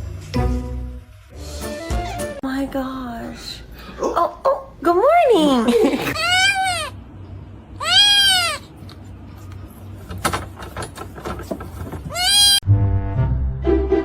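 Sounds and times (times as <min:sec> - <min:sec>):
cat meowing: 0:06.2 - 0:07.0, 0:07.8 - 0:08.7, 0:12.1 - 0:12.6.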